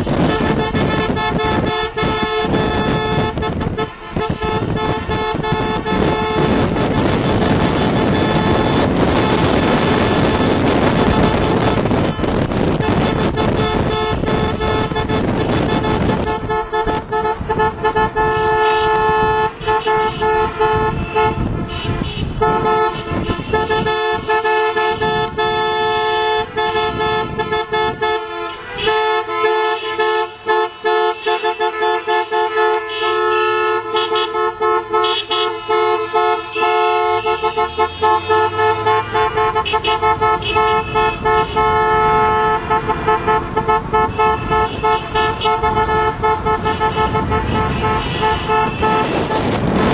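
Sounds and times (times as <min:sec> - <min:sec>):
car horns honking: 0:00.0 - 0:49.9.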